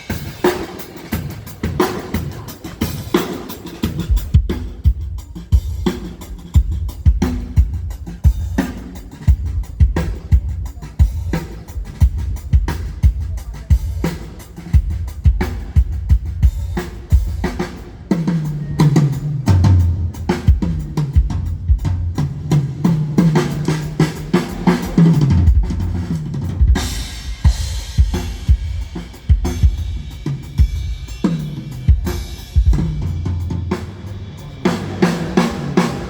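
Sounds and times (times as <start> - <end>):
drum kit groove: 0.0 - 36.0
cymbals washing: 13.7 - 36.0.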